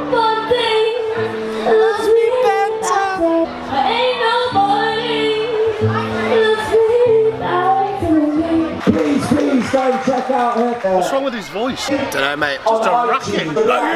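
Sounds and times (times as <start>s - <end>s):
person singing long notes: 0.0s - 8.8s.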